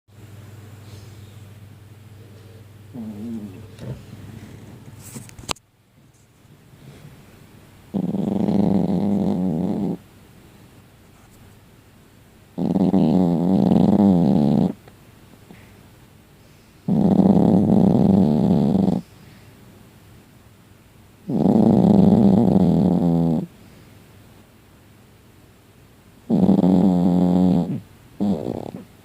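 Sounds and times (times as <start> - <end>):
quiet breathing: 0.6 - 5.2, 6.6 - 7.5, 15.4 - 16.9, 18.8 - 19.7
loud snoring: 2.9 - 4.7, 7.9 - 10.0, 12.6 - 14.8, 16.9 - 19.0, 21.3 - 23.5, 26.3 - 28.9.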